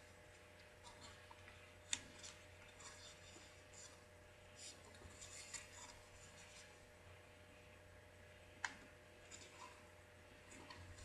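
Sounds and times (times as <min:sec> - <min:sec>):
paper crinkling: 0:00.6 - 0:04.0, 0:04.6 - 0:06.8.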